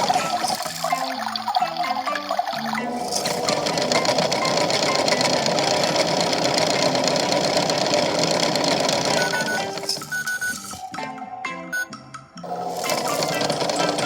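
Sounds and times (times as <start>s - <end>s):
toy washing machine motor whirring: 0.0s - 11.0s, 11.8s - 14.0s
short tune: 3.1s - 14.0s.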